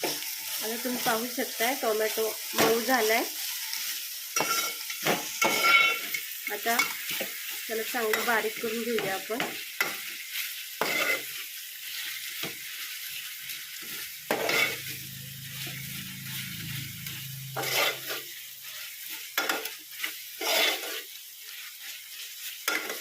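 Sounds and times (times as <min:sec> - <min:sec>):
food sizzling in hot oil: 0:00.0 - 0:23.0
utensil scraping a pot: 0:10.8 - 0:11.3, 0:14.3 - 0:14.9, 0:15.6 - 0:18.3, 0:19.4 - 0:21.1.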